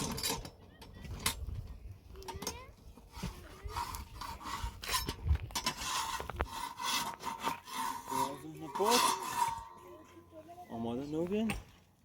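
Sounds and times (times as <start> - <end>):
scraping strokes: 2.9 - 10.4.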